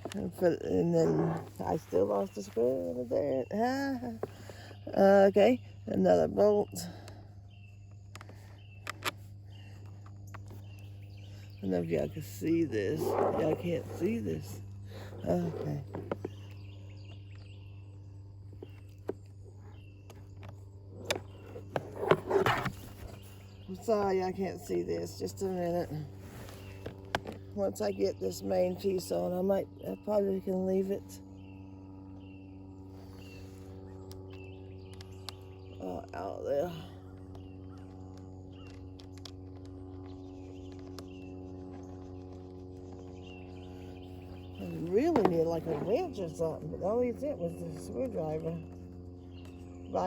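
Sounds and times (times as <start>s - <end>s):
steady low hum: 0.0s - 50.0s.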